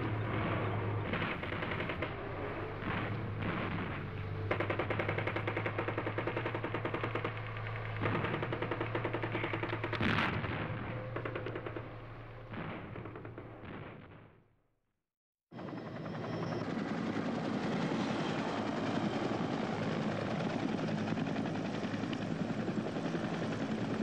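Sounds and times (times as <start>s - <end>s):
machine-gun fire bursts: 0.3s - 2.2s, 2.8s - 14.2s.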